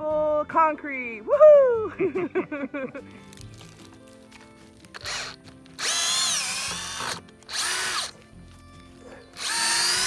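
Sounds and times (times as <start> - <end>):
drill driving screws out of wood: 4.9 - 8.2, 9.4 - 10.0.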